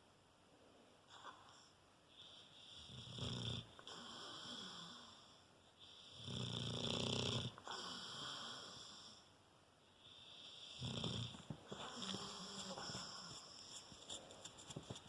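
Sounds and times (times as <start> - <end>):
dog snoring: 1.1 - 9.2, 10.1 - 13.7
dog breathing softly: 11.7 - 14.8.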